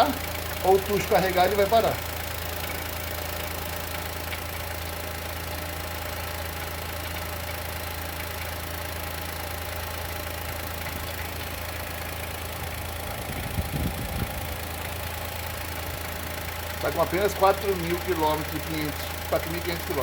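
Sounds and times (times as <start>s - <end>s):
car engine idling with knock: 0.0s - 20.0s
low thumps: 12.6s - 15.0s.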